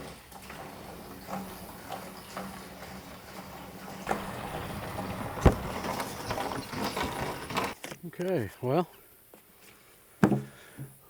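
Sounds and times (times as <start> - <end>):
handling knocks and clatter: 0.0 - 7.9
sharp loud knock: 5.4 - 6.1.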